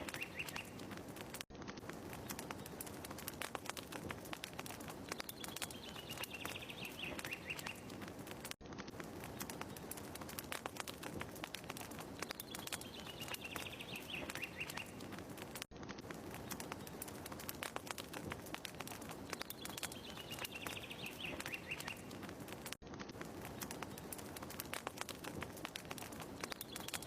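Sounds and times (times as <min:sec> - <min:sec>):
bird chirping: 0:00.0 - 0:00.9, 0:05.1 - 0:08.0, 0:12.2 - 0:15.1, 0:19.3 - 0:22.2, 0:26.4 - 0:27.0
fire crackling: 0:00.0 - 0:27.0.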